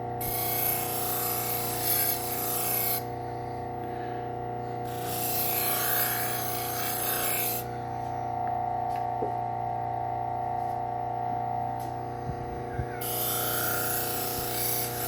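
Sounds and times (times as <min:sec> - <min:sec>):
belt sander motor whine: 0:00.0 - 0:15.0
knife hissing against sander: 0:12.9 - 0:15.0.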